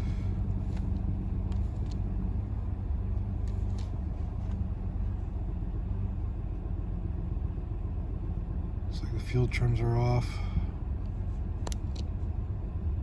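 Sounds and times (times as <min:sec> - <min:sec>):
engine running: 0:00.0 - 0:13.0
light clicks: 0:11.6 - 0:12.1.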